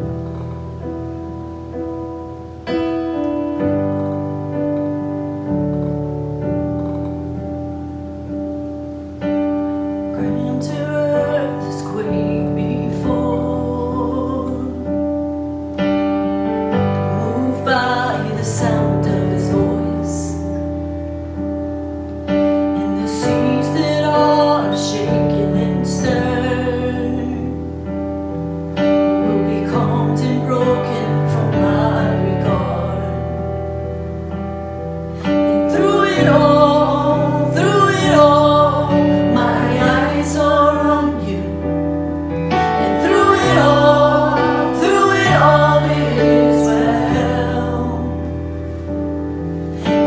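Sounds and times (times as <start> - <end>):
piano chords: 0.0 - 50.0
person singing: 10.1 - 15.2, 16.8 - 20.6, 22.4 - 27.9, 29.1 - 33.5, 35.2 - 48.5.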